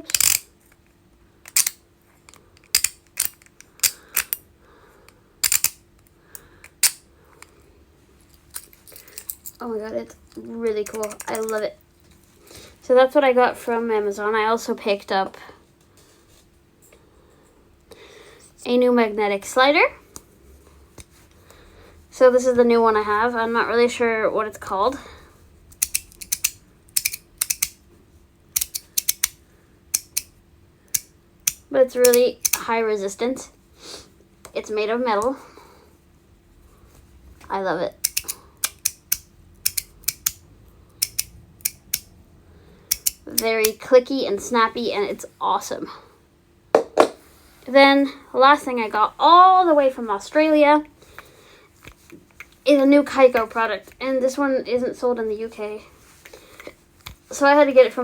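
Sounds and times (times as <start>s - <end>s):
fidget toy clicking: 0.0s - 0.5s, 1.5s - 1.8s, 2.6s - 4.4s, 5.4s - 7.0s, 25.7s - 27.8s, 28.6s - 30.3s, 30.9s - 32.6s, 38.0s - 40.4s, 41.0s - 42.1s, 42.9s - 43.8s.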